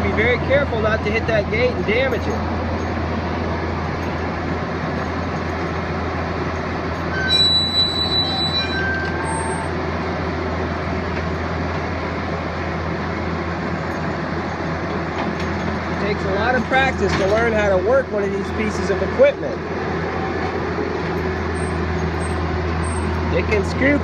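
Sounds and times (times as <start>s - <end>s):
excavator diesel engine running: 0.0s - 24.0s
high squealing and clatter: 7.0s - 9.8s, 19.9s - 24.0s.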